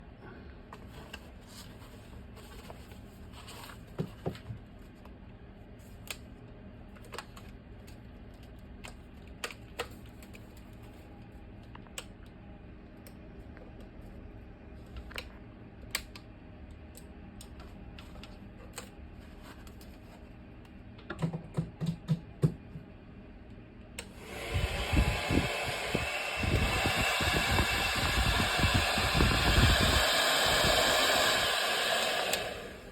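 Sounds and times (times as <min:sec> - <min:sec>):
hair dryer blowing: 0:24.1 - 0:32.9
low hum: 0:24.2 - 0:32.9.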